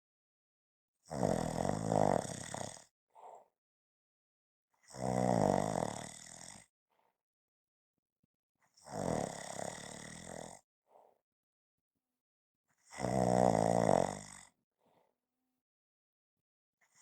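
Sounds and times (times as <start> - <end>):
person snoring: 1.1 - 3.4, 4.9 - 6.7, 8.8 - 10.6, 12.9 - 14.6
faint breath: 3.1 - 3.5, 10.9 - 11.2.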